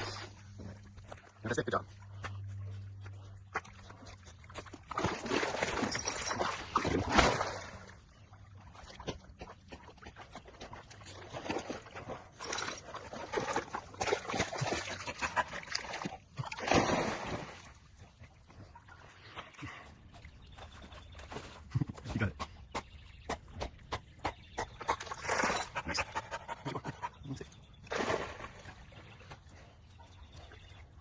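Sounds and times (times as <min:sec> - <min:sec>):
dog splashing in water: 0:04.4 - 0:07.9, 0:11.0 - 0:17.7.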